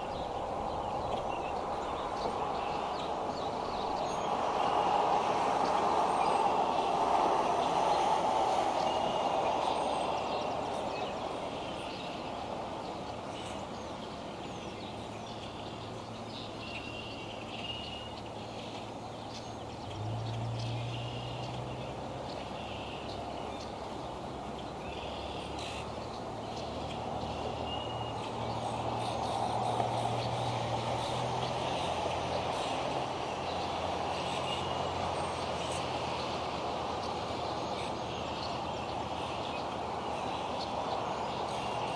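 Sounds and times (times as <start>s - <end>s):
steady rushing noise: 0.0s - 16.7s.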